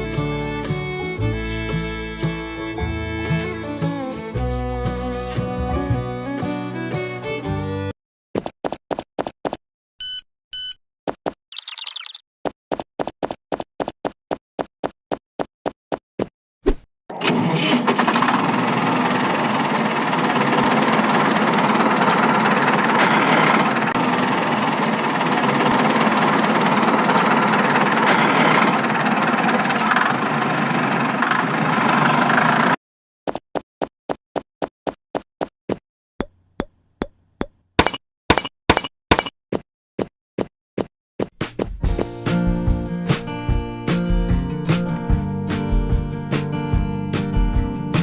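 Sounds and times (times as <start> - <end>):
small engine running: 0.0 - 5.3, 17.2 - 32.8.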